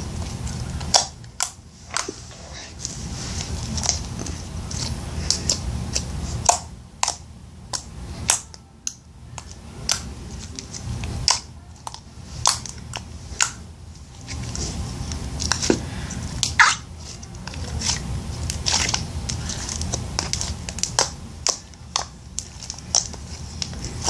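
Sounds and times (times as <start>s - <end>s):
slime clicking and popping: 19.8s - 23.7s.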